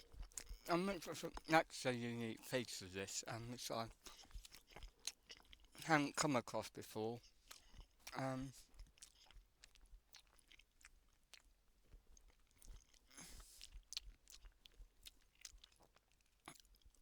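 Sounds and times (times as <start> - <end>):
close-up chewing: 0.0 - 17.0.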